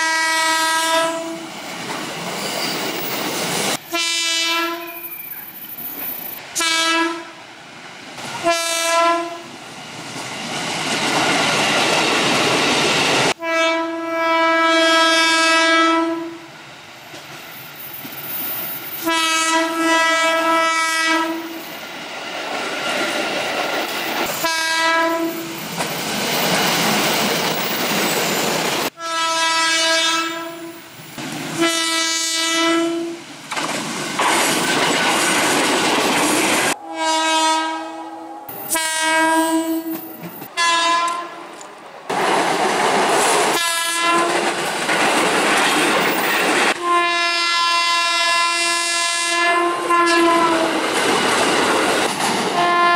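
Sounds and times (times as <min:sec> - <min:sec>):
train horn blasts: 0:00.0 - 0:01.5, 0:03.9 - 0:05.1, 0:06.6 - 0:07.4, 0:08.4 - 0:09.5, 0:13.3 - 0:16.5, 0:19.0 - 0:21.6, 0:24.4 - 0:25.6, 0:28.9 - 0:30.9, 0:31.6 - 0:33.2, 0:36.8 - 0:41.5, 0:43.5 - 0:44.4, 0:46.8 - 0:50.7, 0:52.6 - 0:52.9
trains passing with wheel clatter: 0:00.0 - 0:52.9.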